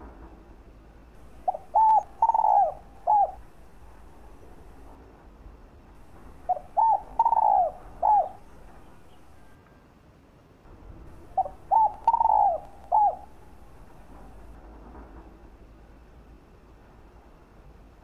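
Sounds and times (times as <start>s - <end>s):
dove cooing: 1.2s - 4.9s, 6.2s - 9.5s, 11.1s - 14.5s.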